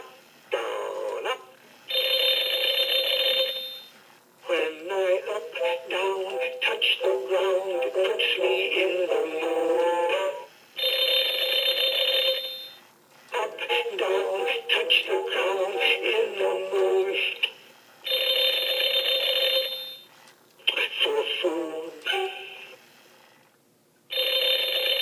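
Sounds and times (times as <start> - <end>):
alarm clock electronic melody: 1.9 - 3.9, 10.8 - 12.8, 18.1 - 20.1.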